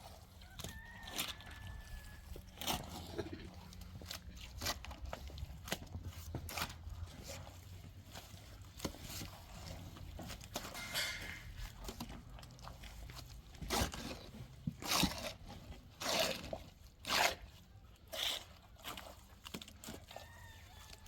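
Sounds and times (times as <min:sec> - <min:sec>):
gritty scraping crunches: 0:00.0 - 0:21.0.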